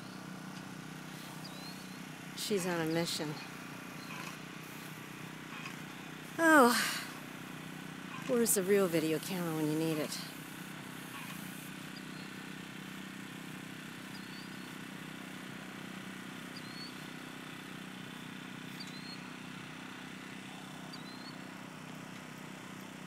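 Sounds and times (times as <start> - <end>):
distant traffic hum: 0.0 - 22.4
high rising bird chirp: 1.4 - 2.1, 11.9 - 12.4, 14.0 - 14.8, 16.5 - 17.1, 18.8 - 19.3, 20.9 - 21.4.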